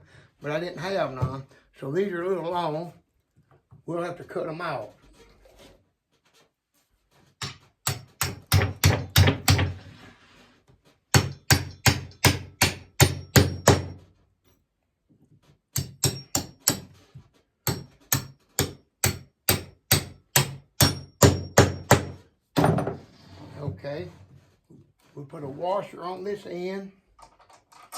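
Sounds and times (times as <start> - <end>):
hammer striking bolt: 17.7 - 22.2.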